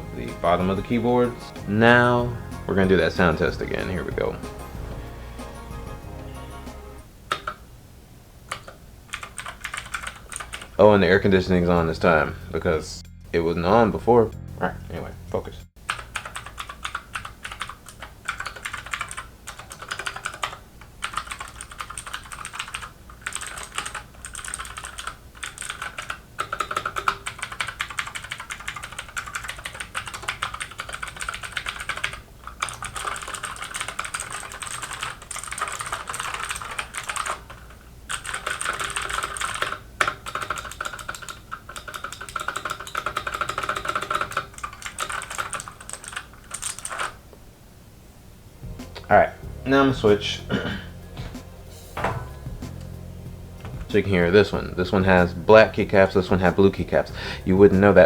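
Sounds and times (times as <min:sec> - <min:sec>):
mechanical keyboard clicks: 0:08.5 - 0:10.7, 0:15.8 - 0:47.1.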